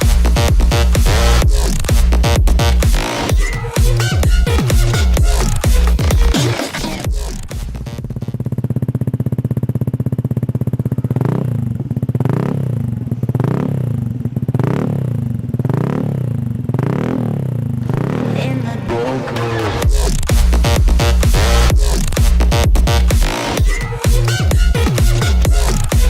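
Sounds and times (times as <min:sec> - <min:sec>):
motorcycle engine idling and revving: 0:00.0 - 0:26.0.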